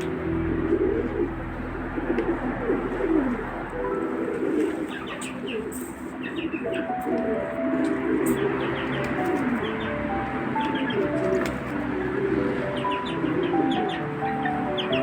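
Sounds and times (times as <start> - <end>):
pigeons cooing: 0.0 - 15.0
small birds chirping: 3.3 - 15.0.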